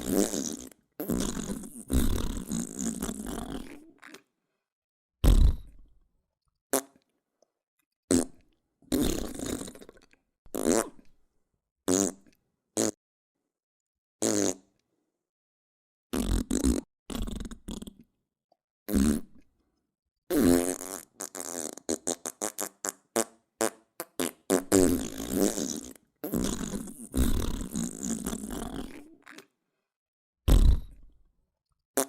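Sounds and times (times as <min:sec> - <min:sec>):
farts: 0:00.0 - 0:04.2, 0:05.2 - 0:05.9, 0:08.1 - 0:11.1, 0:11.9 - 0:13.0, 0:14.2 - 0:14.6, 0:16.1 - 0:18.0, 0:18.9 - 0:19.4, 0:20.3 - 0:29.5, 0:30.5 - 0:31.1.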